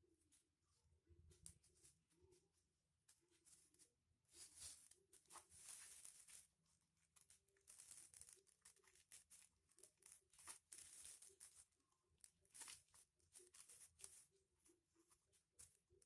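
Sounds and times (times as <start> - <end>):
foil paper crinkling: 4.4 - 14.4.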